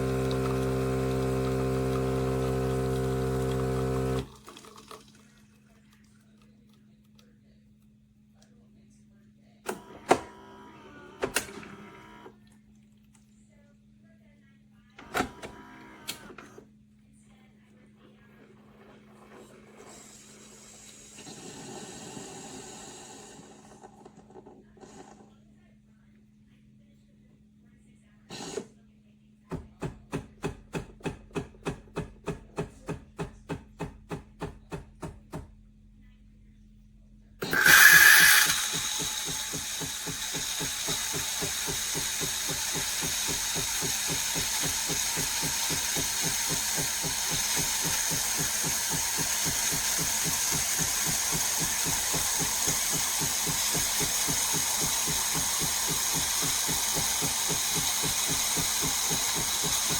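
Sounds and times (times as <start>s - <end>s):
fast pulsing pump: 37.4s - 59.9s
regular machine pulsing: 37.4s - 59.9s.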